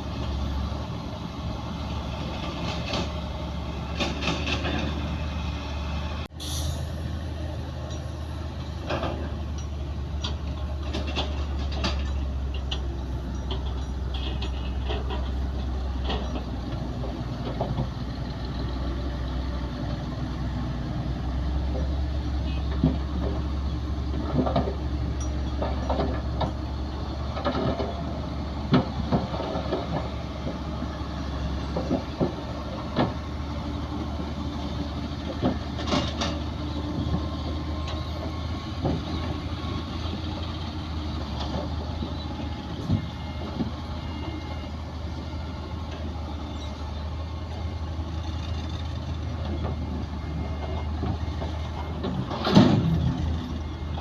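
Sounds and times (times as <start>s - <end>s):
diesel machinery engine drone: 0.0s - 54.0s
metallic clanks and knocks: 3.9s - 5.1s, 8.8s - 18.0s, 22.7s - 30.6s, 35.2s - 39.4s, 50.6s - 54.0s.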